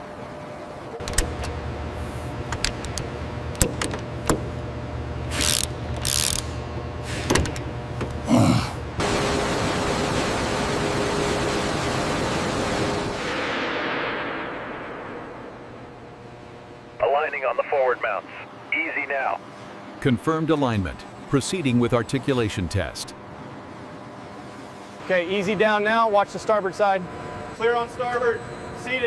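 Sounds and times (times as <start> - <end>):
power tool driving a bolt: 5.3 - 6.5.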